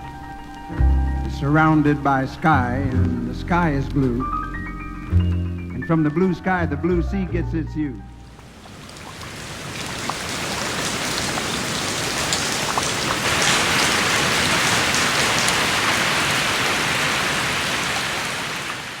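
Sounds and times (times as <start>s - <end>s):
heavy rain falling: 8.2s - 19.0s
drops ticking on a surface: 8.4s - 15.7s.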